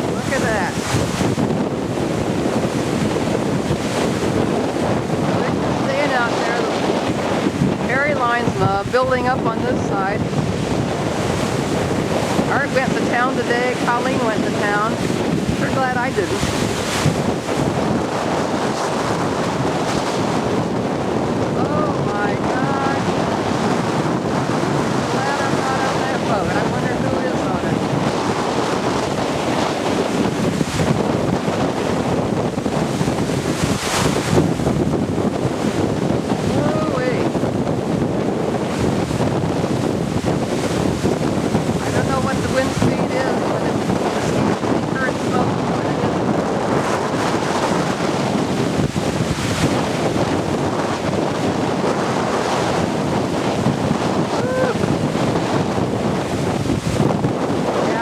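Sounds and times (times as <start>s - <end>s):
waves in rough water: 0.0s - 58.0s
wind buffeting microphone: 0.0s - 58.0s.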